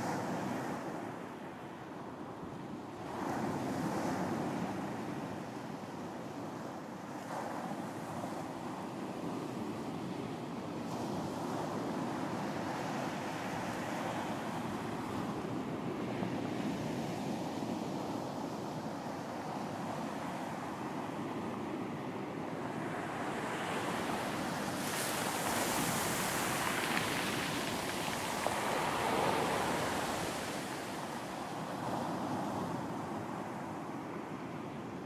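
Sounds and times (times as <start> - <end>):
ocean waves breaking on beach: 0.0 - 35.0.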